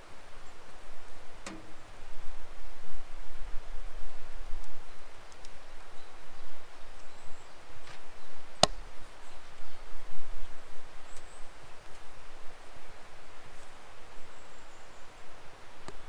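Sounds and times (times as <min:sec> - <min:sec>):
outdoor hiss: 0:00.0 - 0:16.0
faint ticks: 0:04.5 - 0:06.0.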